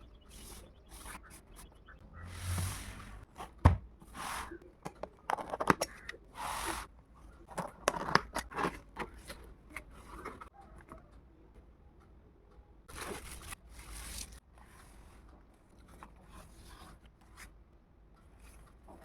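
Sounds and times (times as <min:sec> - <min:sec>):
clicks and scrapes: 0:02.4 - 0:11.0.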